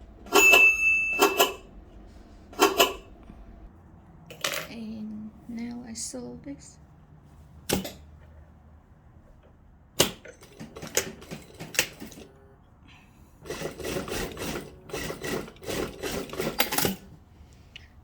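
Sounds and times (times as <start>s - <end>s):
sewing machine stitching: 2.5s - 3.1s, 10.0s - 12.3s, 13.4s - 17.1s
sewing machine clicks: 10.0s - 12.3s.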